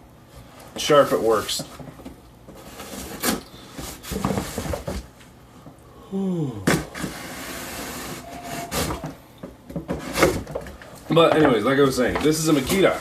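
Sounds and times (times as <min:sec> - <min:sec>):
rubbing noises: 0:06.9 - 0:09.2, 0:11.2 - 0:13.0.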